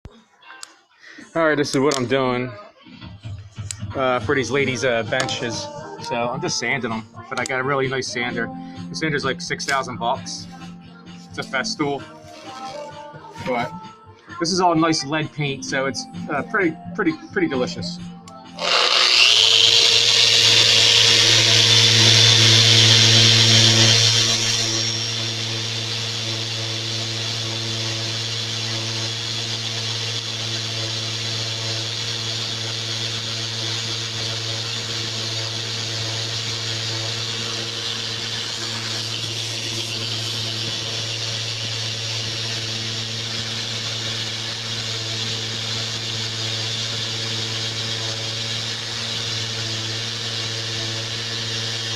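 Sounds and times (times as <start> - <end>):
electric sander running: 18.5 - 51.9.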